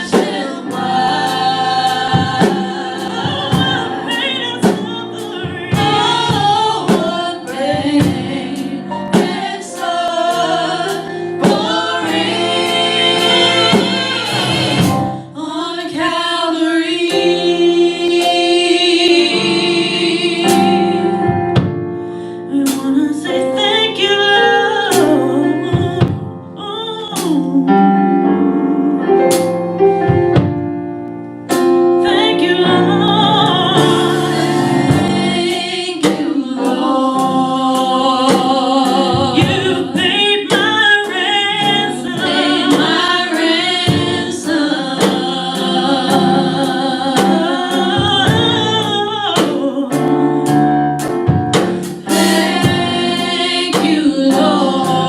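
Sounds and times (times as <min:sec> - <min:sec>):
drums: 0:00.0 - 0:15.2, 0:20.4 - 0:22.0, 0:22.6 - 0:23.0, 0:27.0 - 0:27.5, 0:29.3 - 0:30.8, 0:33.0 - 0:55.0
gospel group singing: 0:00.0 - 0:30.6, 0:31.5 - 0:55.0
piano: 0:00.0 - 0:55.0.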